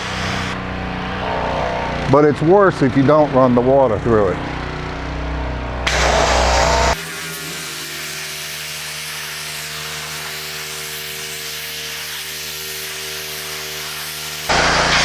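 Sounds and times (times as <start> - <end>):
pressure washer engine rumble: 0.0 - 10.8, 13.5 - 15.0
pressure washer spray hiss: 5.9 - 15.0.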